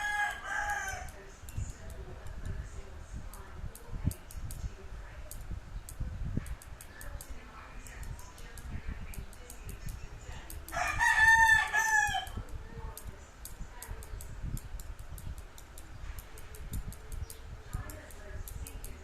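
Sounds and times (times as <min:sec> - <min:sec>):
rooster crowing: 0:00.0 - 0:01.1, 0:10.7 - 0:12.4.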